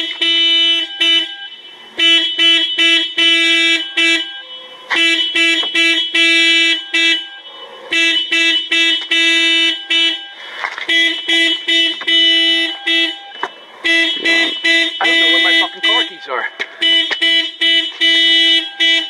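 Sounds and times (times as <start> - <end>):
car horn alarm honking: 0.0 - 19.0.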